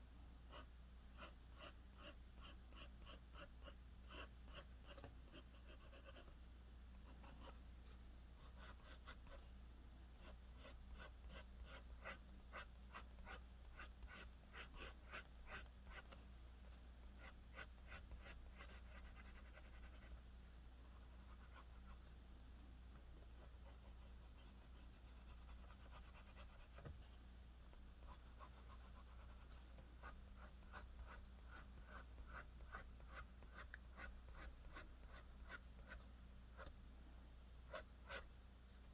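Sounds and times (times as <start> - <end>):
faint low hum: 0.0 - 38.9
pencil scratching on paper: 0.5 - 6.3, 7.0 - 7.6, 8.4 - 9.4, 10.2 - 16.2, 17.2 - 20.2, 20.8 - 22.0, 23.4 - 26.8, 28.0 - 36.0, 37.7 - 38.3.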